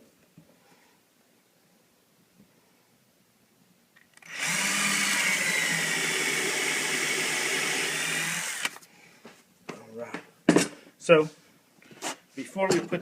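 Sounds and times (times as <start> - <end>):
electric drill whining: 4.1 - 8.8.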